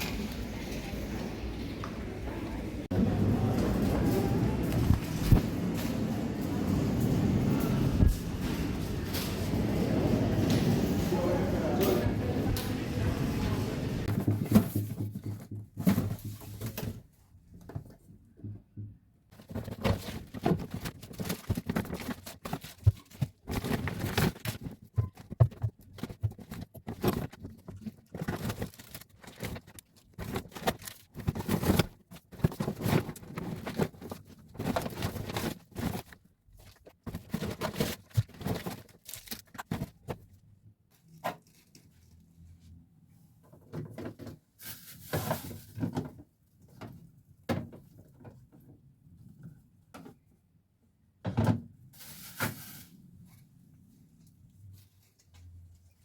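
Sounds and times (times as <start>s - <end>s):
household items rustling and scraping: 3.4s - 18.1s, 19.3s - 42.8s, 43.8s - 46.2s, 52.0s - 53.6s.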